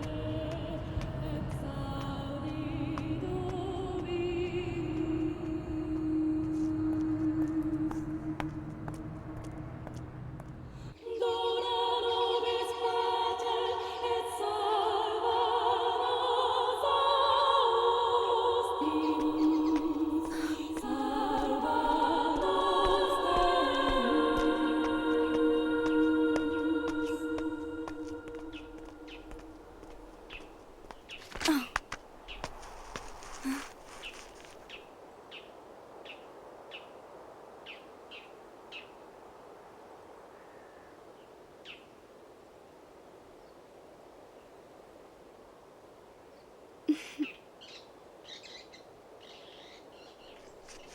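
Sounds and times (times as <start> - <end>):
low hum: 0.0 - 16.4, 18.0 - 34.5
faint outdoor ambience: 0.0 - 50.9
choir holding long notes: 11.0 - 29.8
bird chirping: 18.9 - 22.0.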